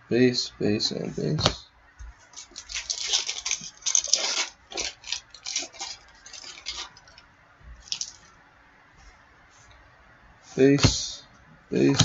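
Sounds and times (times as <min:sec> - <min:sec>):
cards being handled: 0:02.2 - 0:07.2
wrapper crinkling and tearing: 0:02.4 - 0:07.2, 0:07.8 - 0:08.2.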